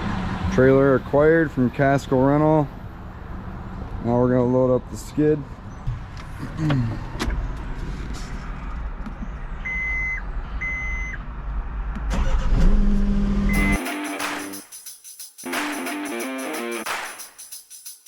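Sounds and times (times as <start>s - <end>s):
backup alarm beeps: 9.6s - 11.2s, 13.5s - 13.8s
music: 13.5s - 18.0s.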